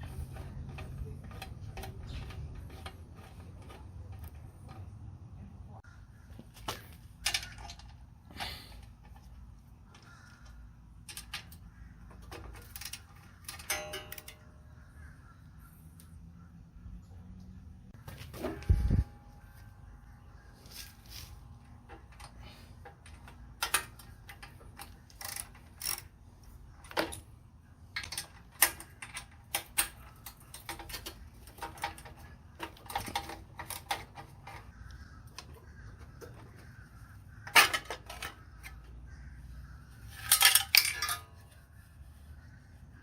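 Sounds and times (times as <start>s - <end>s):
metal tools clinking: 12.2s - 14.5s, 40.0s - 41.6s.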